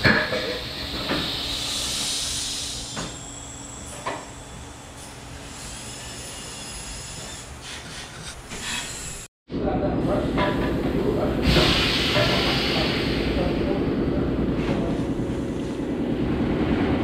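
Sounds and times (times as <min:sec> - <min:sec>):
compressed air hissing: 0:00.6 - 0:09.3, 0:11.4 - 0:13.5.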